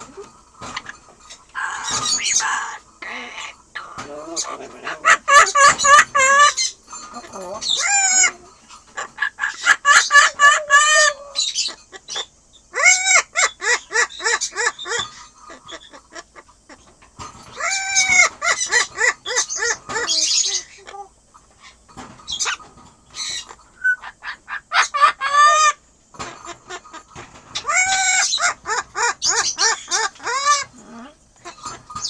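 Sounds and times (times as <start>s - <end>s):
parrot laughing: 1.6s - 12.1s, 12.8s - 16.8s, 17.6s - 21.1s, 23.8s - 25.8s, 27.6s - 31.6s.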